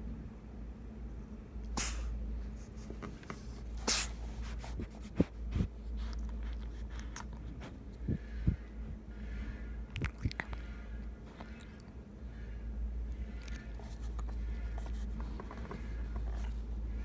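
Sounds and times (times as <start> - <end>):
cat sneezing: 1.7 - 2.2, 3.8 - 4.7.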